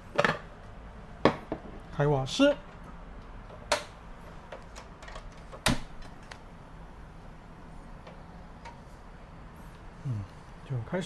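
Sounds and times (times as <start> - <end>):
gas stove igniter clicks: 3.7 - 4.0.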